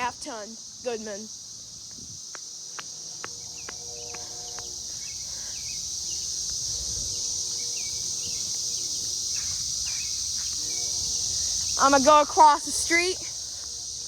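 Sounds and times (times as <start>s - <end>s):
insect chorus: 0.0s - 14.0s
bird chirps: 7.5s - 11.8s.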